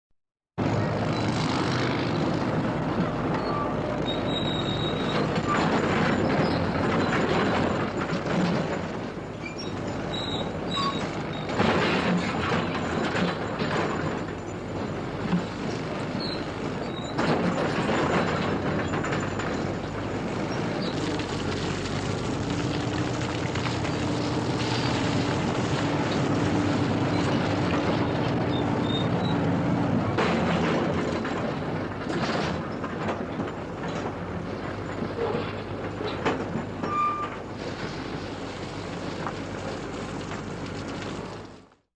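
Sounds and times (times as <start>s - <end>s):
diesel engine rumble: 0.6s - 41.8s
high metallic squeaks: 3.4s - 7.8s, 9.4s - 11.5s, 36.8s - 37.5s.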